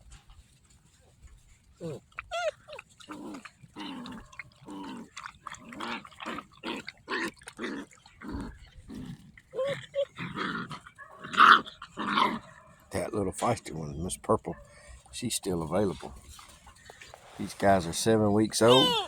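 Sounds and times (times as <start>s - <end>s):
puppies whining and grunting: 1.5s - 12.5s, 15.7s - 19.0s.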